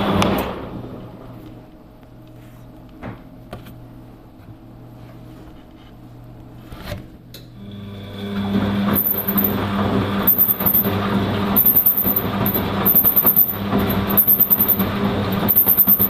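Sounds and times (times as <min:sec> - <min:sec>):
washing machine motor turning drum: 0:07.4 - 0:16.0.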